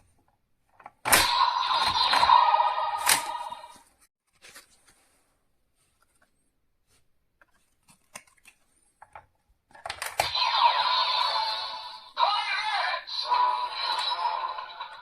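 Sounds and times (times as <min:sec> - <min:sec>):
synthetic voice: 0:10.3 - 0:15.0
toy electronic music: 0:10.3 - 0:15.0.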